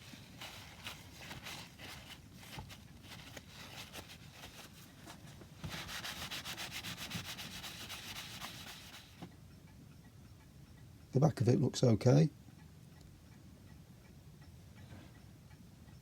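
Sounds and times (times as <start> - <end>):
hand rubbing on wood: 0.0 - 9.3.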